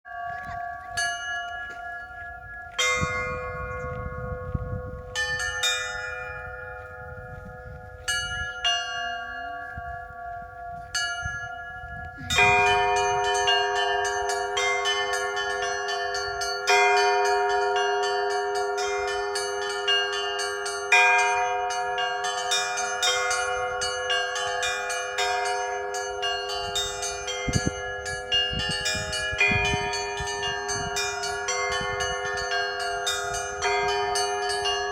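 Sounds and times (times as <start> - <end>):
bells pealing: 0.1 - 34.9
hand-rung bell strokes: 10.9 - 34.9.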